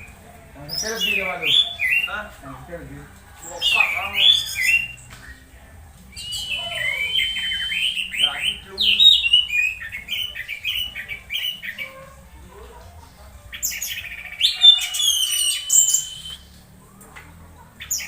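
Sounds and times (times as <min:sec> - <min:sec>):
thrush calling: 0:00.0 - 0:02.4, 0:03.4 - 0:05.4, 0:06.1 - 0:12.3, 0:13.5 - 0:16.5.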